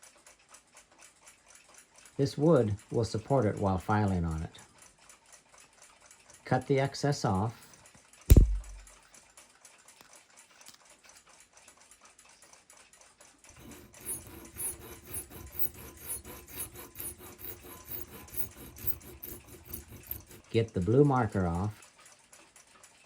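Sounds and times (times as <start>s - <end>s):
small file strokes: 13.6s - 21.7s.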